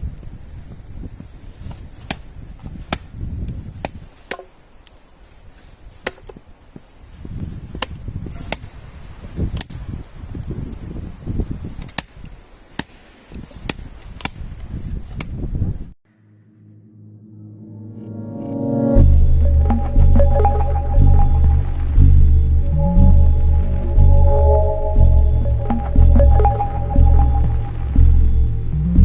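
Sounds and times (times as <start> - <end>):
wind rumble on microphone: 0.0 - 4.1, 7.0 - 12.4, 13.4 - 15.9
music: 16.8 - 29.0.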